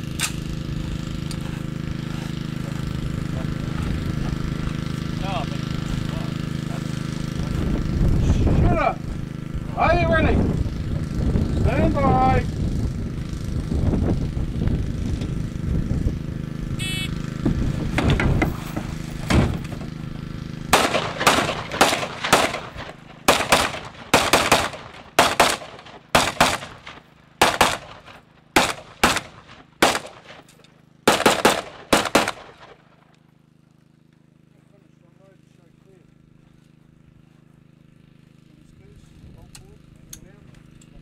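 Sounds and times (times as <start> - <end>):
rifle shots: 20.7 - 30.5, 31.1 - 32.8.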